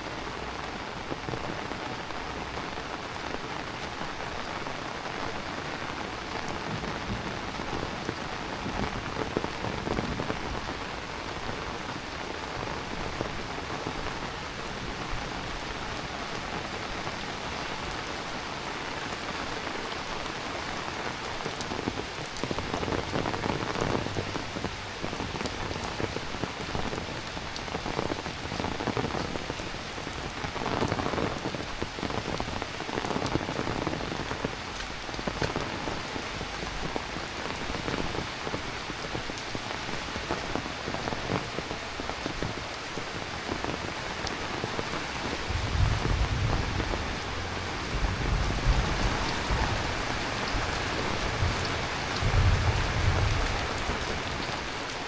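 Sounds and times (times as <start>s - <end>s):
heavy rain: 0.0s - 55.0s.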